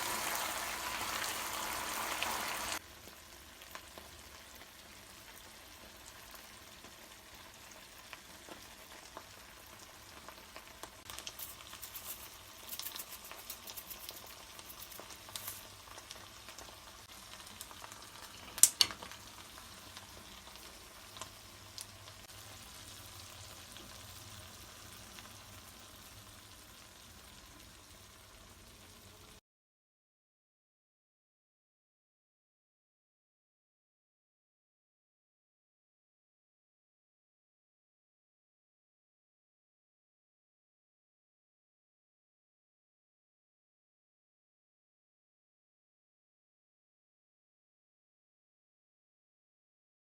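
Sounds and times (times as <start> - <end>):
food sizzling in a pan: 0.0 - 29.4.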